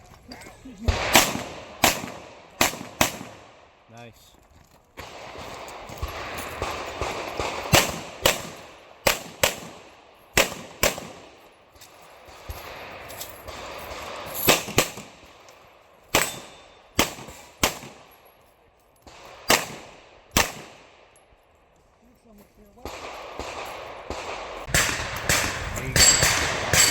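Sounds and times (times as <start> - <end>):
gunshots: 0.8 - 3.6, 5.0 - 11.4, 12.2 - 15.4, 16.1 - 18.1, 19.1 - 21.1, 22.8 - 26.9.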